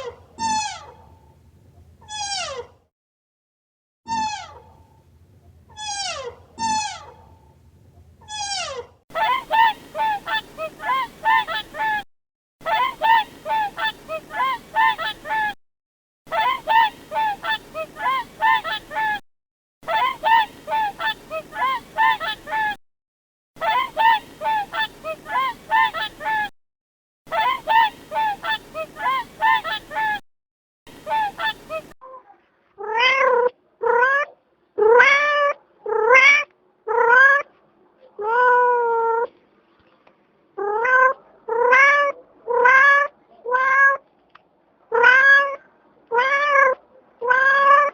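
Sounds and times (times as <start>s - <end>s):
cat meowing: 2.0s - 2.7s, 32.8s - 37.4s, 40.6s - 44.0s, 44.9s - 47.9s.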